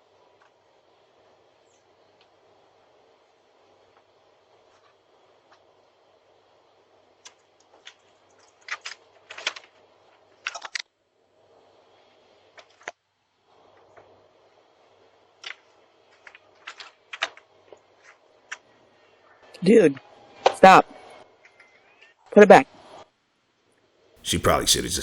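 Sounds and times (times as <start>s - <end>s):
faint steady hum: 24.2s - 25.0s.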